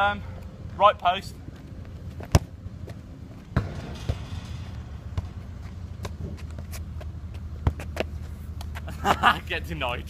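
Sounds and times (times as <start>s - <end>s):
football kicked and bouncing: 2.0s - 4.3s, 5.0s - 9.2s.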